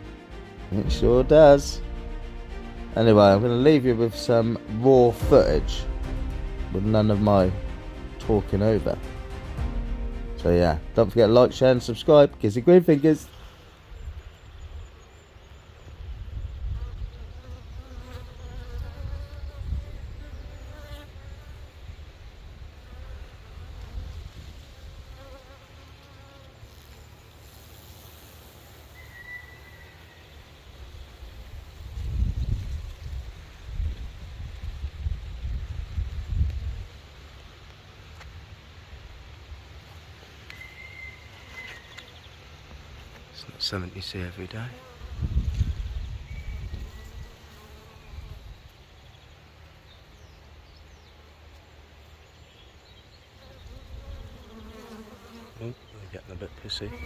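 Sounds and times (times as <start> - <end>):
honeybees buzzing: 53.5 - 57.0
bee swarm buzzing: 56.6 - 57.0.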